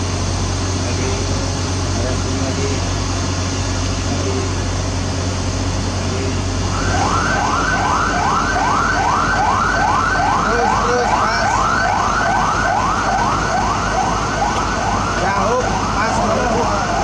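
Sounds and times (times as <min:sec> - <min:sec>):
low engine rumble: 0:00.0 - 0:17.0
electronic siren wailing: 0:06.7 - 0:17.0.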